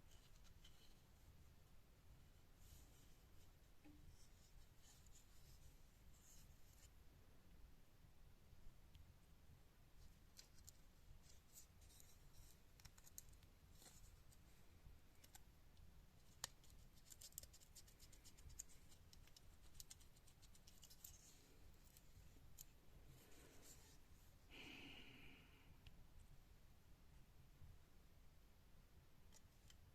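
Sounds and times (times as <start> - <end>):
faint scratching: 16.2 - 24.4.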